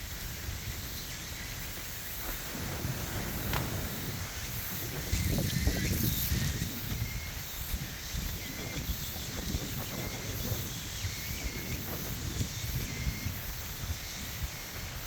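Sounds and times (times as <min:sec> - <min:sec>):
faint insect chirp: 0:00.0 - 0:15.0
rain hissing: 0:00.0 - 0:15.0
footsteps on wet trail: 0:01.4 - 0:05.3.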